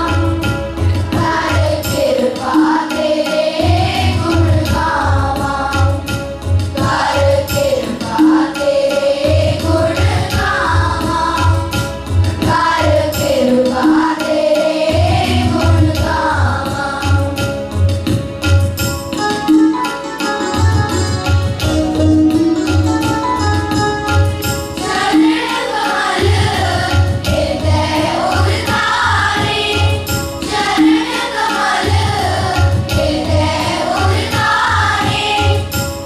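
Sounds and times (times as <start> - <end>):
group singing a hymn: 0.0 - 17.4, 24.8 - 36.0
held accompanying notes: 0.0 - 36.0
regular drum beat: 0.0 - 36.0.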